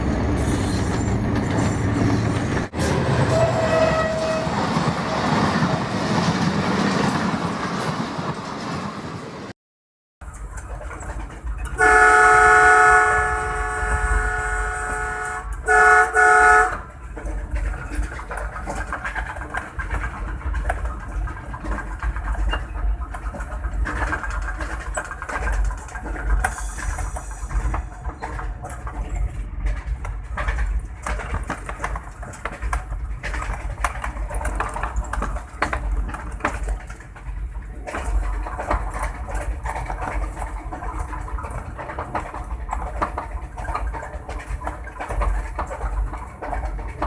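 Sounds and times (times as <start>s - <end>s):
rattling and clattering: 16.8s - 47.0s.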